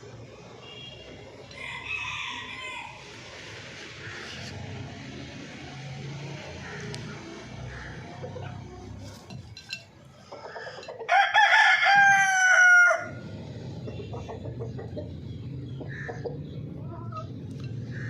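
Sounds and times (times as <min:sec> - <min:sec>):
rooster crowing: 0:01.5 - 0:03.1, 0:11.0 - 0:13.2.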